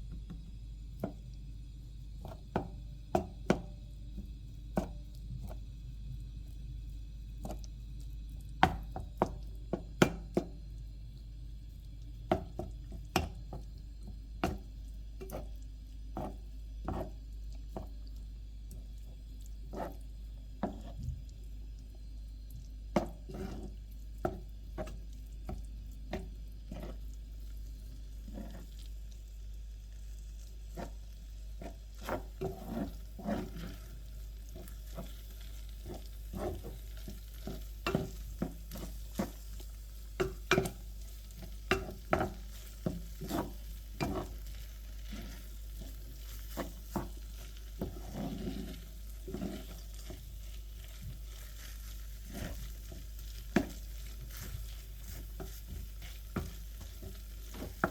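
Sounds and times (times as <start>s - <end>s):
rice sizzling: 0.0s - 57.9s
steady low hum: 0.0s - 57.9s
utensil scraping a pan: 15.2s - 17.2s, 19.6s - 21.2s, 23.0s - 28.9s, 30.7s - 57.9s.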